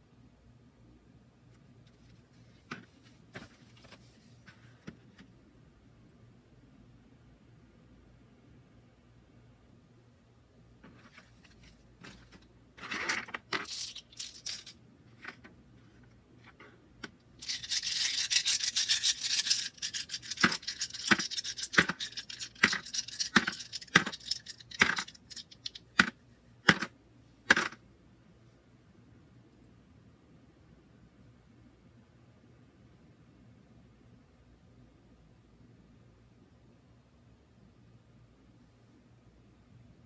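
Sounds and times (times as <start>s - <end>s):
paper pages rustling: 2.9s - 4.6s, 11.0s - 15.5s, 17.4s - 26.1s
pages flicking: 12.1s - 15.4s, 17.4s - 26.1s.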